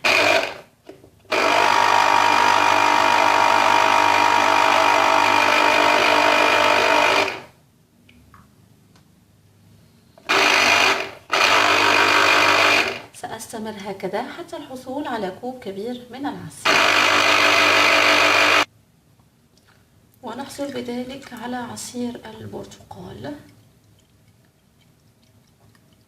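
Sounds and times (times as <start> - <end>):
electric juicer motor running: 0.0 - 0.7, 1.3 - 7.5, 10.2 - 13.0, 16.6 - 18.7.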